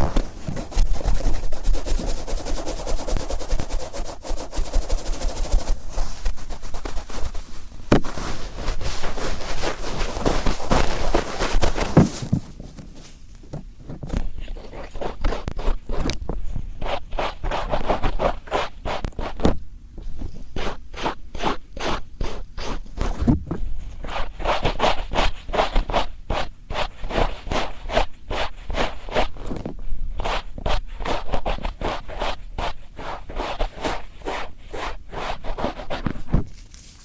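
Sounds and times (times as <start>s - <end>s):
cotton swab scrubbing in ear: 0.0s - 12.0s, 14.2s - 16.2s, 30.2s - 36.1s.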